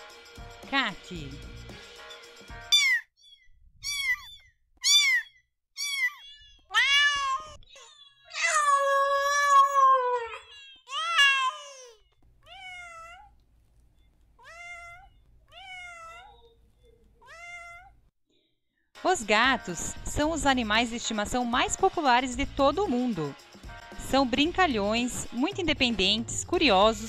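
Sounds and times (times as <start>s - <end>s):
cat meowing: 2.7s - 3.1s, 3.8s - 7.6s, 8.3s - 13.4s, 14.4s - 18.0s.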